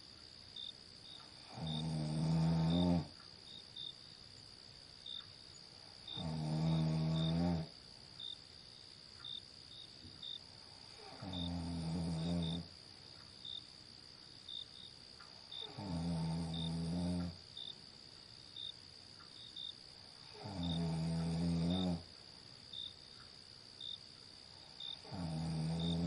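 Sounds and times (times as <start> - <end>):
crickets chirring: 0.0 - 26.0
person snoring: 1.4 - 3.1, 6.1 - 7.8, 10.9 - 12.7, 15.6 - 17.4, 20.3 - 22.1, 25.0 - 26.0.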